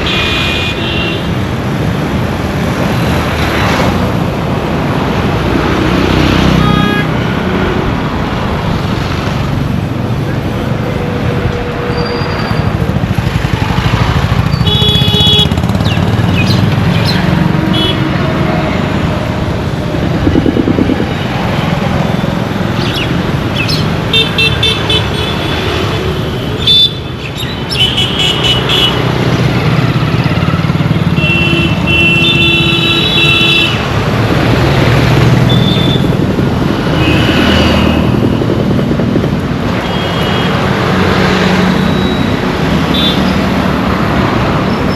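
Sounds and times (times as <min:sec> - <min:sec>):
car and motorcycle horns honking: 0:00.0 - 0:01.6, 0:06.5 - 0:07.5, 0:14.4 - 0:16.3, 0:17.6 - 0:18.4, 0:24.1 - 0:34.2, 0:35.5 - 0:36.2, 0:36.8 - 0:38.1, 0:39.7 - 0:43.6
traffic engines rumbling: 0:00.0 - 0:44.9.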